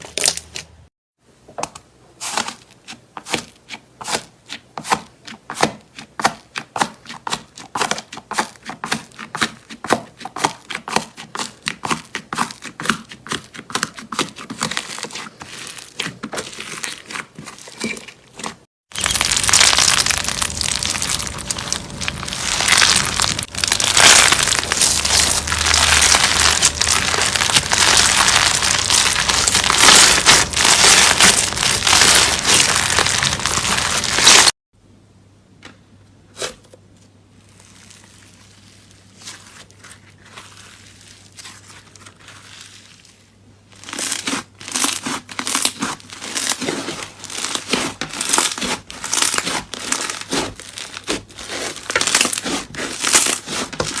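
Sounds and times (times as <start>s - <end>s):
slime crackling: 7.9s - 34.5s, 43.8s - 54.0s.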